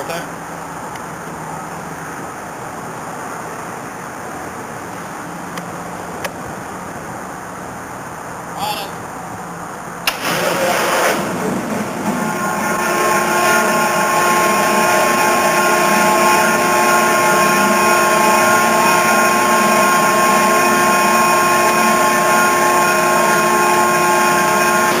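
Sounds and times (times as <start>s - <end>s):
machine whining: 10.1s - 25.0s.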